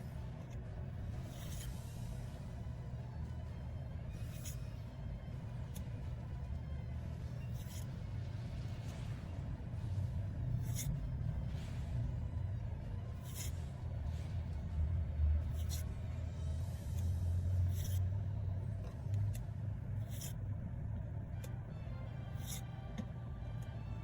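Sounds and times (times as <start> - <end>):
low rumble: 8.0 - 24.0.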